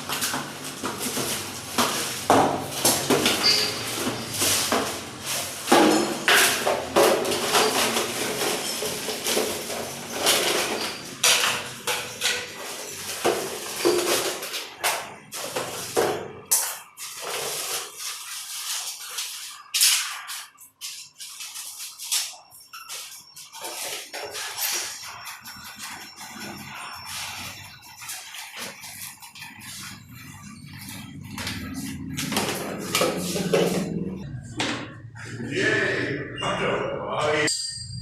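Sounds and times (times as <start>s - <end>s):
toilet tank parts knocking and scraping: 0.0s - 18.0s, 23.5s - 35.1s.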